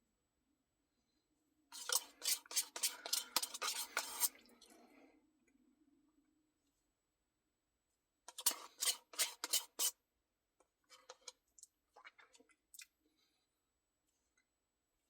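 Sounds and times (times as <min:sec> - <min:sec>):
spoon scraping ice cream: 0:01.7 - 0:04.5, 0:08.3 - 0:09.9.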